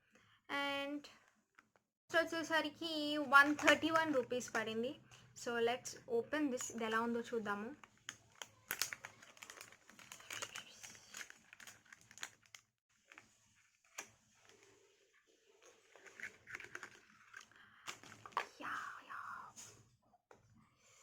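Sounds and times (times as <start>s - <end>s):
packaging rustling and crinkling: 3.1s - 4.6s, 7.8s - 14.8s, 15.6s - 18.5s.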